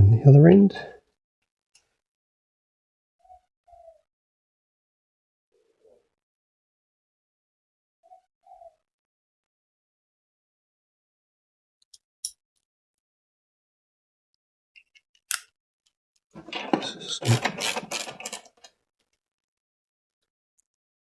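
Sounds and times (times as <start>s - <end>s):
metal hand tools clicking: 16.4s - 18.7s
metallic clatter: 16.4s - 18.7s.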